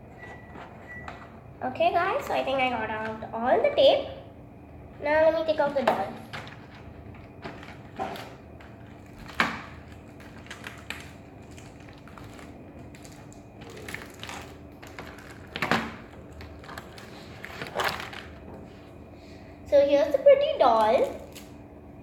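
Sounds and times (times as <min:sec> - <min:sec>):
plastic and cardboard packaging crinkling: 0:05.6 - 0:19.1, 0:20.7 - 0:21.6.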